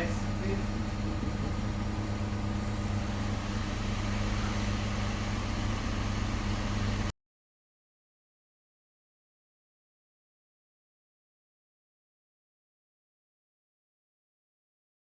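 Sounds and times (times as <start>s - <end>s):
car engine idling: 0.0s - 7.1s.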